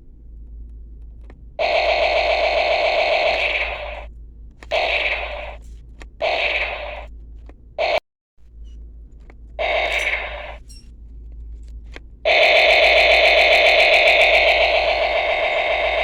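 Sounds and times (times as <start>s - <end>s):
toy gun electronic firing sounds: 1.6s - 4.1s, 4.7s - 5.6s, 6.2s - 7.1s, 7.8s - 8.0s, 9.6s - 10.6s, 12.3s - 16.0s.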